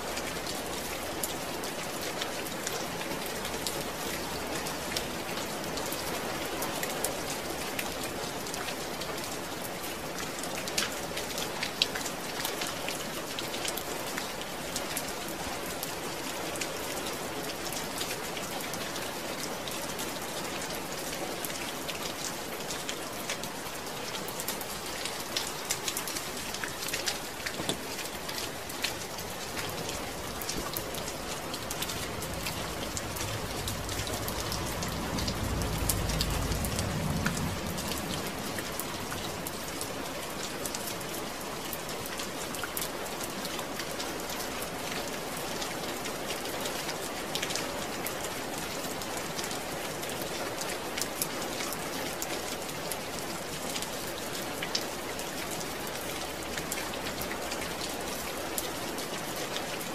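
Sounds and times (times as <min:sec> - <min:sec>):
steady rain falling: 0:00.0 - 0:59.9
low rumble: 0:30.0 - 0:39.7.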